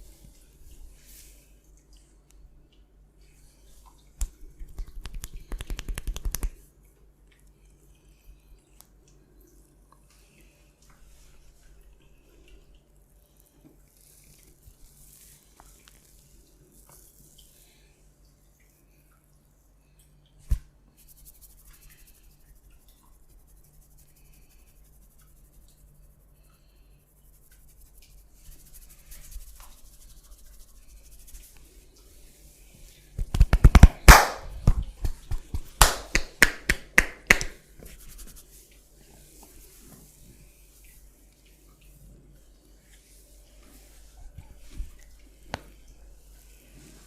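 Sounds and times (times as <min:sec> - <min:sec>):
hands slapping and cracking in massage: 0:04.2 - 0:06.7, 0:33.2 - 0:38.4.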